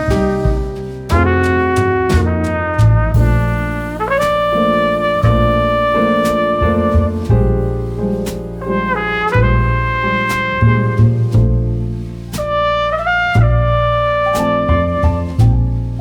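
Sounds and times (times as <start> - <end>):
clicking beat: 0.0 - 7.5
brass lead melody: 0.0 - 16.0
sustained bass line: 0.0 - 16.0.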